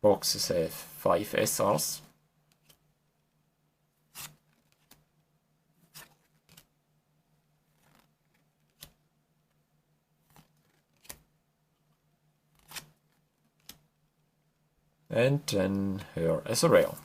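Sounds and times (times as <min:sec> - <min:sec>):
faint steady hum: 0:00.0 - 0:17.0
trading cards sliding: 0:02.5 - 0:02.8, 0:04.1 - 0:05.0, 0:05.8 - 0:06.7, 0:07.7 - 0:09.0, 0:10.3 - 0:11.3, 0:12.5 - 0:13.8.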